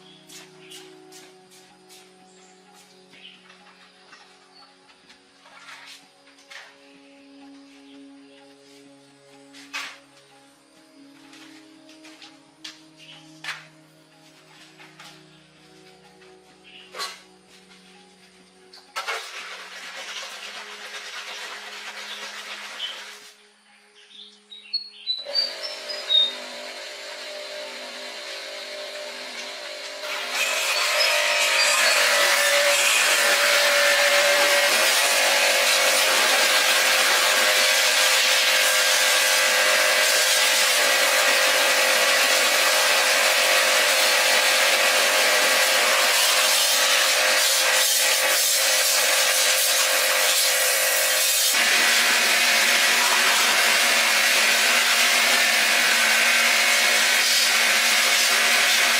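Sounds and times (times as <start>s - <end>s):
power tool rasping: 18.9s - 23.4s, 25.2s - 58.9s.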